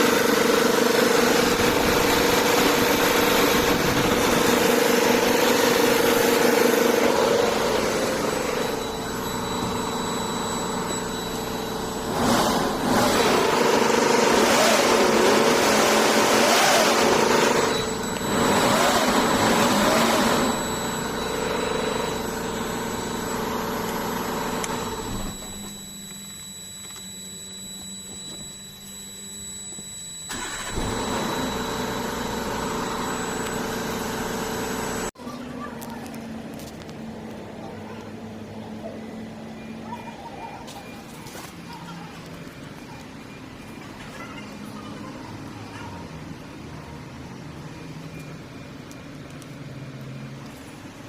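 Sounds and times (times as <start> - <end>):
diesel engine running: 0.0 - 27.0, 30.2 - 39.5.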